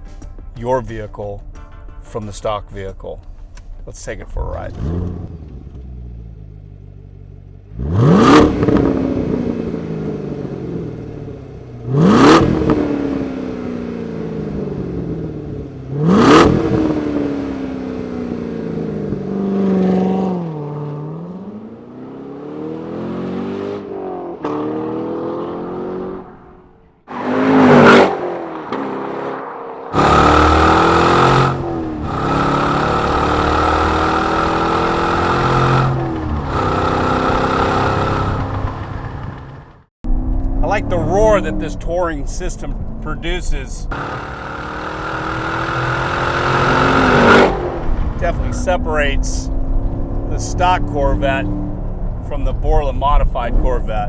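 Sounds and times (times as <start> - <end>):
car engine revving: 2.9 - 54.0.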